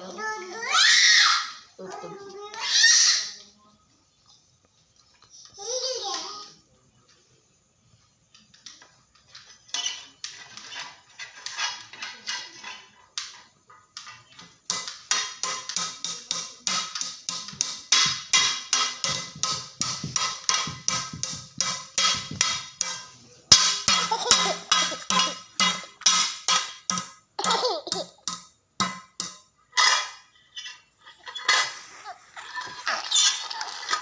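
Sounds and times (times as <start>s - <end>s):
sharp rhythmic taps: 14.7s - 29.4s.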